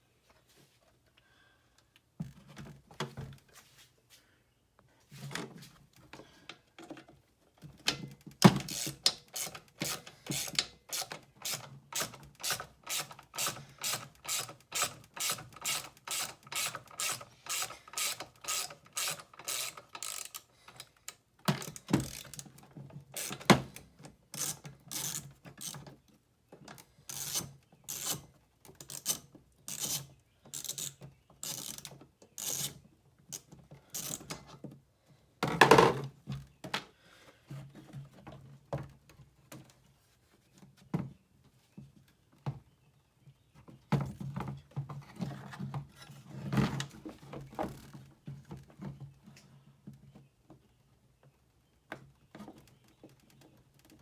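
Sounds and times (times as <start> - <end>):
ratchet wrench clicking: 8.7 - 20.5, 23.2 - 23.5, 27.1 - 28.2, 30.6 - 32.7.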